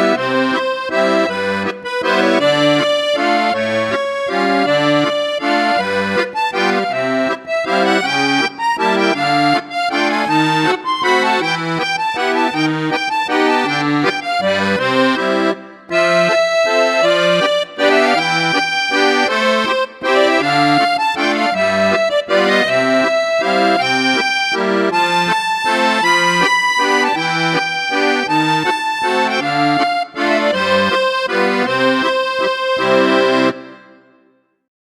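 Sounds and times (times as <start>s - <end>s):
accordion music: 0.0s - 34.7s.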